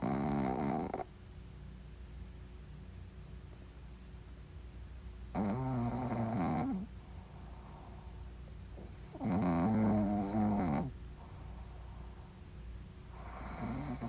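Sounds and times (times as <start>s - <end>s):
dog snoring: 0.0s - 1.1s, 5.3s - 8.1s, 8.8s - 12.2s, 13.1s - 14.0s.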